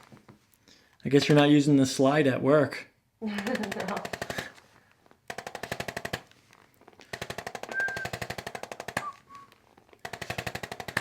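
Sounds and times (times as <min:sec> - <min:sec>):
percussion instrument tapping rapidly: 0:03.4 - 0:04.5, 0:07.1 - 0:09.4, 0:10.0 - 0:11.0.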